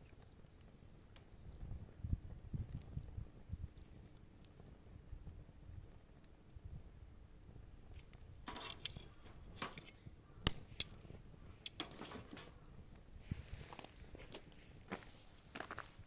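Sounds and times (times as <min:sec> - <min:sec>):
wood fire snapping: 0:07.9 - 0:13.1
fire tools clinking: 0:08.4 - 0:11.0, 0:11.6 - 0:12.7.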